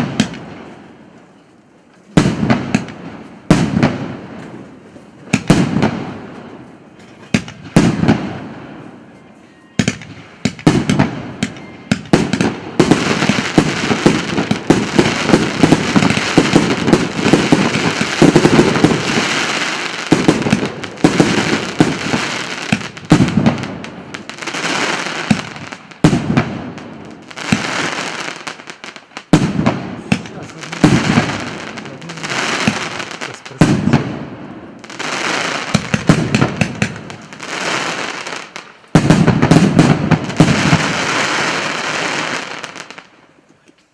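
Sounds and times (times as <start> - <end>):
firework bursts and crackling: 0.0 - 1.0, 2.1 - 9.1, 9.8 - 43.4.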